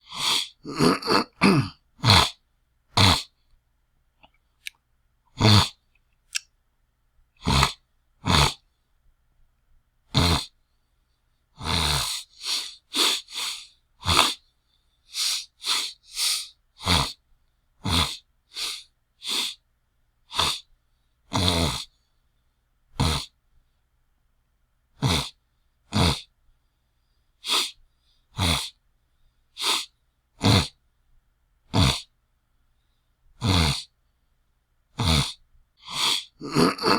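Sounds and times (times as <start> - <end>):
person clearing throat: 0.2 - 2.4, 3.0 - 3.3, 5.4 - 5.8, 25.0 - 25.3, 31.8 - 32.1, 35.0 - 36.9.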